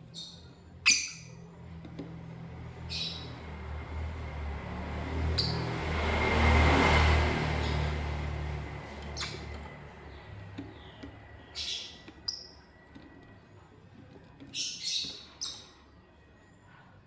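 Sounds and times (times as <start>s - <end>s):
bird chirp: 0.0s - 1.9s, 2.8s - 3.6s, 5.3s - 5.8s, 7.6s - 16.9s
lovebird harsh calls: 0.2s - 1.4s.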